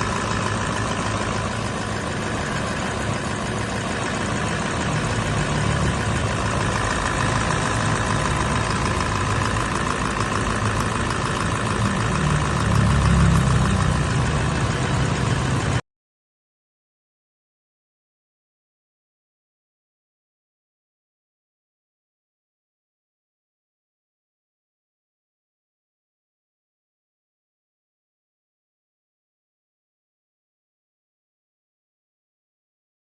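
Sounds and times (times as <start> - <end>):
diesel engine idling with knocking: 0.0 - 15.8.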